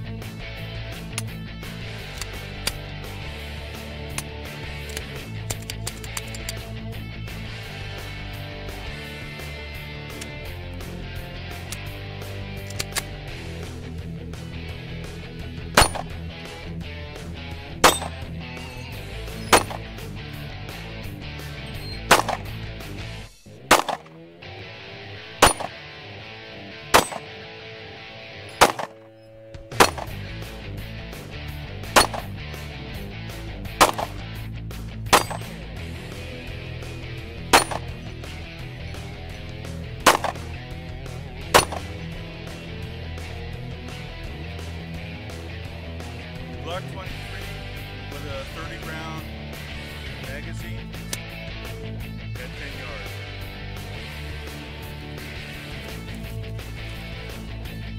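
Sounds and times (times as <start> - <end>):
background music: 0.0 - 57.9
handgun shots: 12.7 - 13.1, 15.8 - 16.2, 17.8 - 20.0, 21.8 - 22.6, 23.7 - 24.2, 25.4 - 25.8, 26.9 - 27.4, 28.6 - 30.2, 32.0 - 32.3, 33.8 - 34.2, 35.1 - 35.6, 37.5 - 37.9, 40.0 - 40.6, 41.5 - 42.0.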